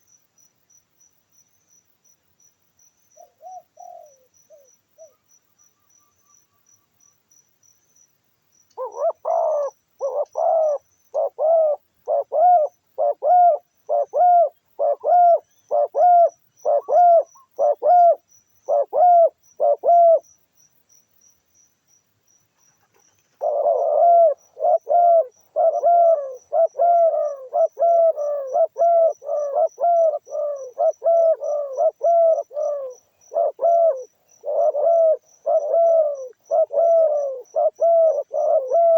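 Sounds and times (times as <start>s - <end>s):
insect chirping: 0.0s - 38.9s
doves cooing: 8.8s - 20.2s, 23.2s - 38.9s.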